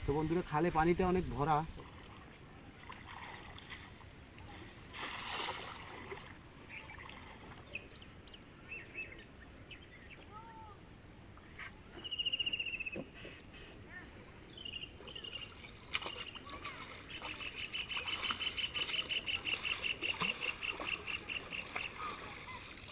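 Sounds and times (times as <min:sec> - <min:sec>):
water splashing: 0:01.6 - 0:07.8, 0:15.0 - 0:22.9
birds chirping: 0:06.6 - 0:22.9
high bird trill: 0:12.0 - 0:13.3.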